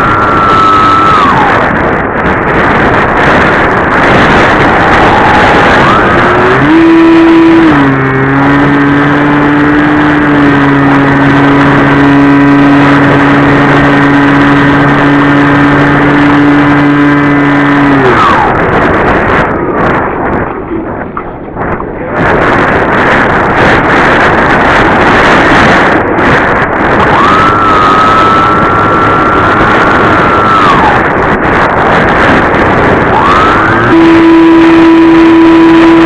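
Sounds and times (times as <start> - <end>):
electric model plane motor whining: 0.0 - 1.5, 27.1 - 31.0, 33.1 - 36.0
wind rushing past plane: 0.0 - 36.0.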